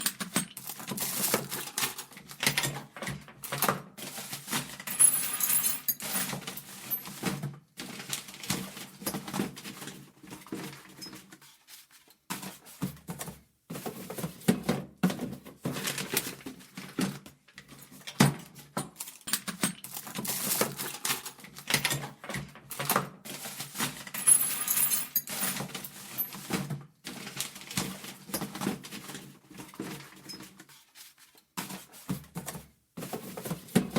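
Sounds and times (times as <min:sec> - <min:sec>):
small items rattling and clinking: 0:00.0 - 0:11.3, 0:15.5 - 0:30.8
drawers sliding and knocking: 0:12.4 - 0:17.2, 0:19.9 - 0:30.8, 0:31.6 - 0:33.9.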